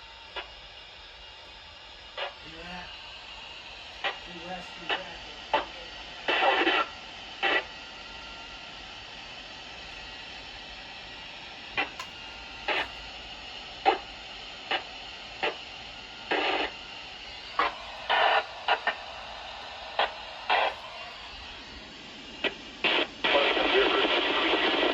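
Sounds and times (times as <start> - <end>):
radio hiss: 0.0 - 10.6, 11.2 - 24.9
static bursts: 11.8 - 13.0, 17.5 - 21.7.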